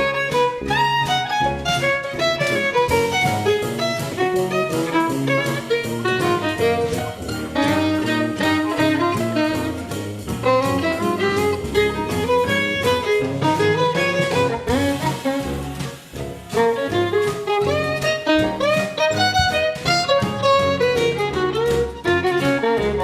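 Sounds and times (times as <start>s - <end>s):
instrumental background music: 0.0s - 23.0s.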